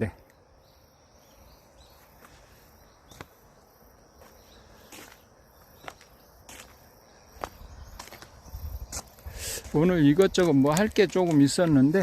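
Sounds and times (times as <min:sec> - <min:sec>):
insects chirping: 0:00.0 - 0:12.0
footsteps: 0:02.0 - 0:03.4, 0:04.2 - 0:12.0.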